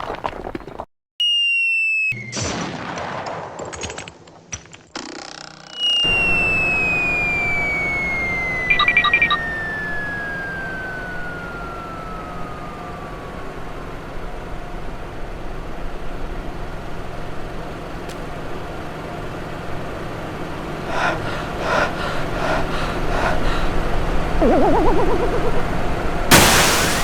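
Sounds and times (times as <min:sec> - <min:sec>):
cartoon falling whistle: 0:05.7 - 0:13.2, 0:24.4 - 0:25.6, 0:26.3 - 0:27.0
pulsing tones: 0:05.8 - 0:14.2, 0:24.4 - 0:27.0.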